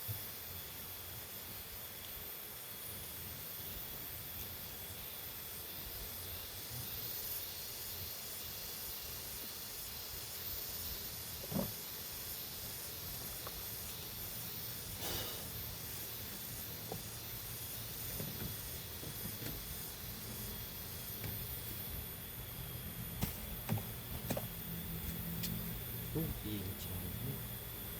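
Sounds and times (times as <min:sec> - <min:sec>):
sprayer nozzle hissing: 0:12.4 - 0:21.9.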